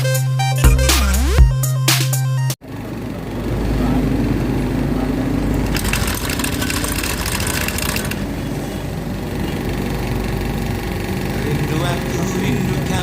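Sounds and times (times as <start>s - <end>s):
motorcycle engine running: 2.7s - 8.5s
fast high-pitched rattle: 5.7s - 8.2s.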